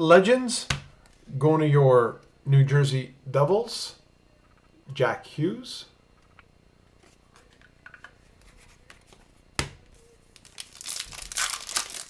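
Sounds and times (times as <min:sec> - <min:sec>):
handling trading cards: 0:07.0 - 0:12.0
foil wrapper crinkling and tearing: 0:10.3 - 0:12.0.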